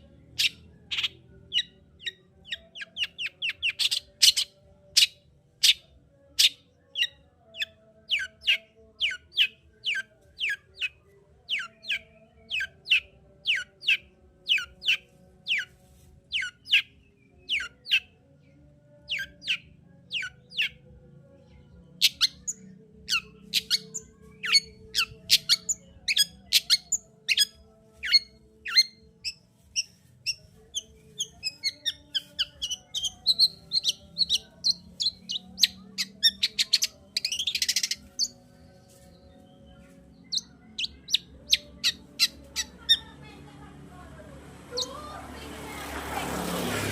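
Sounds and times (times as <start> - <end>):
bird chirping and whistling: 22.0 - 30.4, 31.2 - 38.4.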